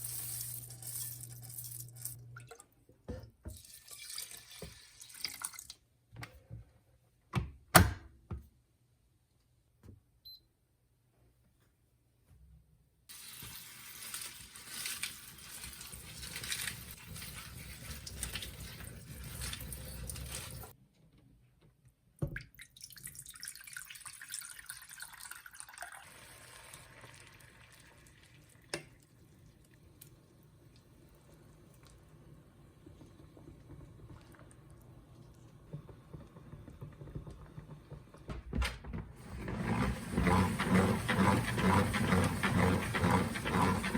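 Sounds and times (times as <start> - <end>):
tap water running into sink: 3.5 - 5.8, 39.2 - 43.9.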